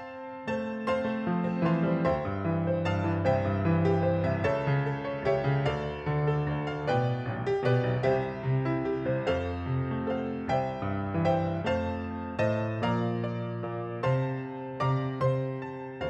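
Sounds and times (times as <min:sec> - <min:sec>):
piano playing a hymn: 0:00.0 - 0:16.0.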